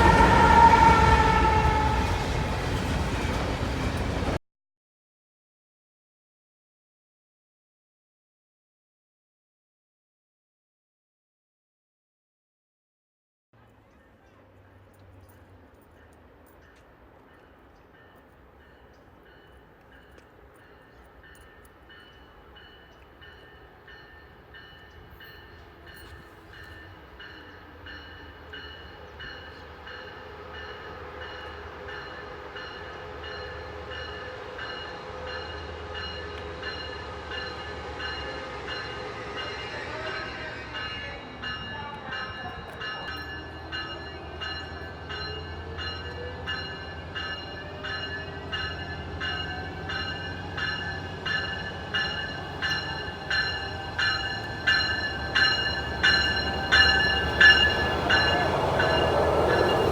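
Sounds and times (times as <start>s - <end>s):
train rumble: 0.0s - 4.4s, 13.6s - 59.9s
bell ringing: 40.2s - 59.9s.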